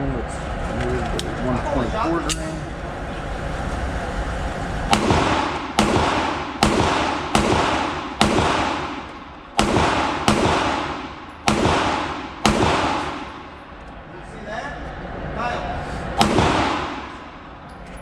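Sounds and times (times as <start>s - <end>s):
pistol shots with reverberant tail: 4.9s - 13.6s, 16.2s - 17.6s.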